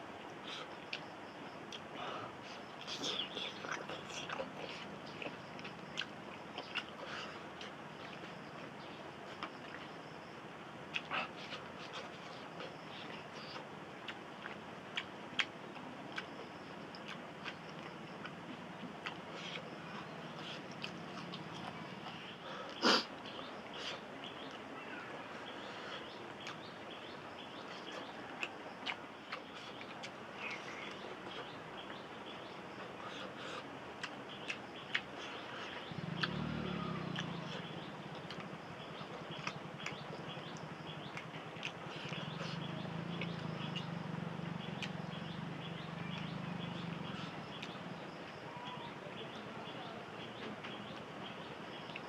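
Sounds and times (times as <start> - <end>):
person chewing food: 3.4 - 8.3, 10.9 - 22.8, 33.2 - 36.4, 41.2 - 43.8
loud sniff: 22.5 - 23.1.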